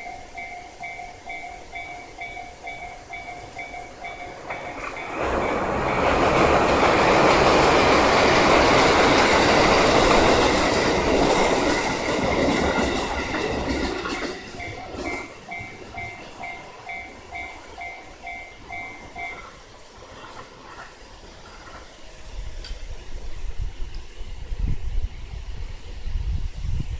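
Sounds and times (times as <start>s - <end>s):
crossing warning bell: 0.0s - 21.8s
train wheels clattering on rails: 0.0s - 24.1s.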